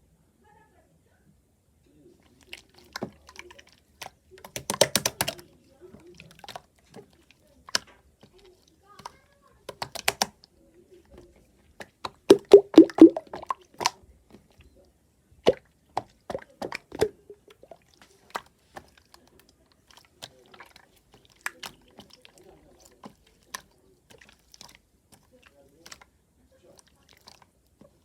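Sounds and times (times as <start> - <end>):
wet pops and clicks: 2.5 - 5.4, 9.7 - 10.4, 11.8 - 14.0, 15.5 - 17.6.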